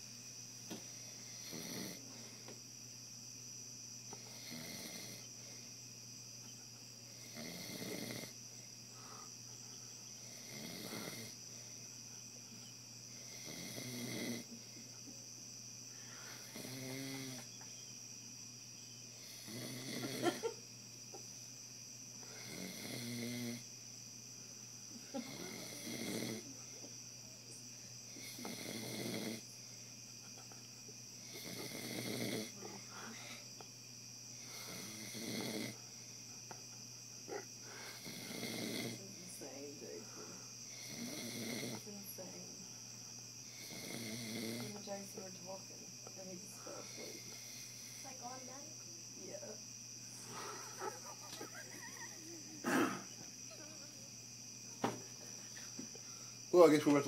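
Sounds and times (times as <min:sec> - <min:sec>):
man snoring: 0:00.9 - 0:02.0, 0:04.2 - 0:05.3, 0:07.1 - 0:08.4, 0:10.2 - 0:11.4, 0:13.1 - 0:14.5, 0:16.3 - 0:17.5, 0:19.2 - 0:20.5, 0:22.2 - 0:23.7, 0:25.2 - 0:26.5, 0:28.1 - 0:29.5, 0:31.2 - 0:32.7, 0:34.4 - 0:35.8, 0:37.3 - 0:39.0, 0:40.7 - 0:41.8, 0:43.4 - 0:44.7.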